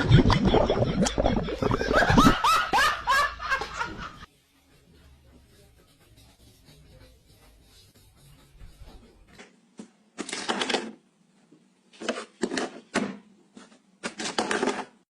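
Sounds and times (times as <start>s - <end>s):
people laughing: 0.0s - 4.3s.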